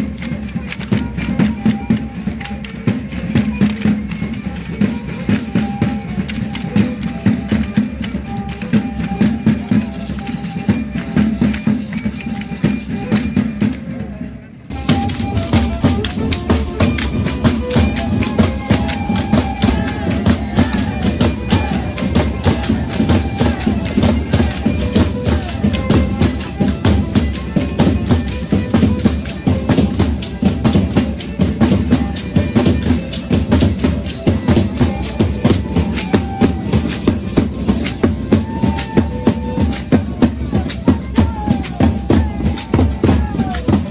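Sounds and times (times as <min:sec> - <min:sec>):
violin melody: 0:00.0 - 0:13.9, 0:14.7 - 0:43.9
drum beat: 0:14.7 - 0:43.9.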